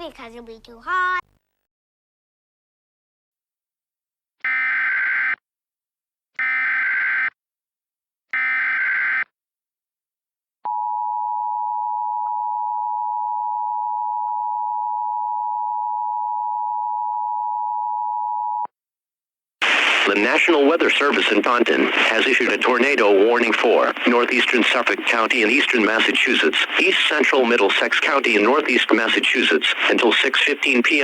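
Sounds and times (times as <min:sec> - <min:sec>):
digital header data bursts: 0:20.1 - 0:31.0.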